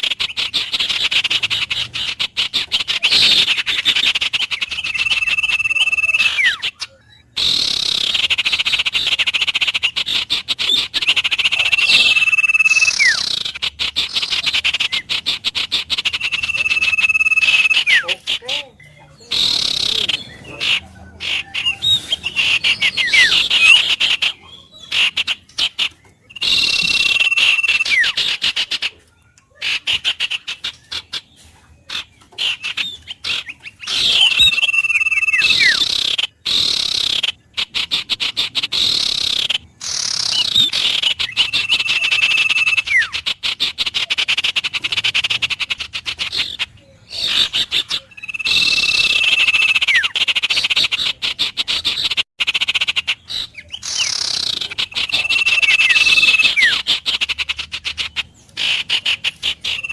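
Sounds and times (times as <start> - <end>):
frogs trilling: 0.0 - 28.8, 31.9 - 57.6
bird whistles: 0.0 - 59.9.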